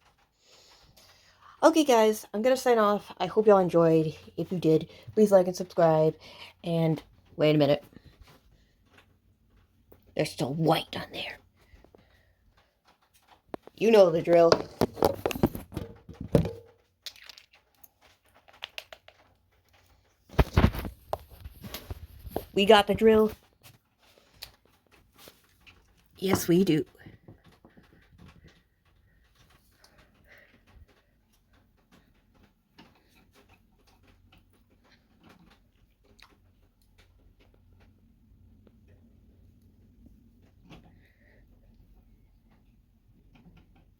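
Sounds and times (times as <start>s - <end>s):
light rustling handling noise: 11.0s - 43.7s.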